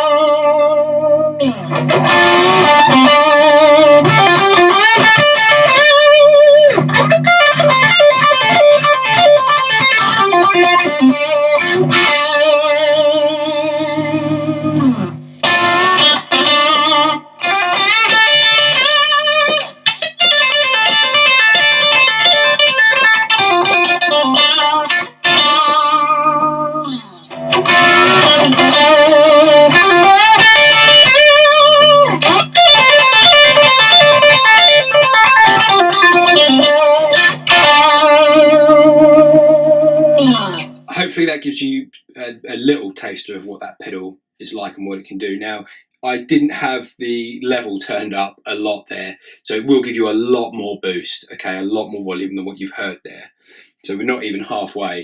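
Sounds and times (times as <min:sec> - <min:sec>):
overdriven electric guitar lead: 0:00.0 - 0:40.9.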